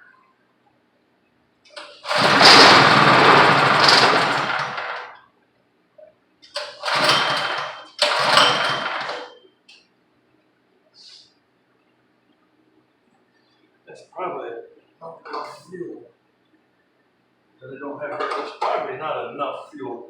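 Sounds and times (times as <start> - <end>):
engine being pull-started: 1.8 - 5.2, 6.6 - 9.3.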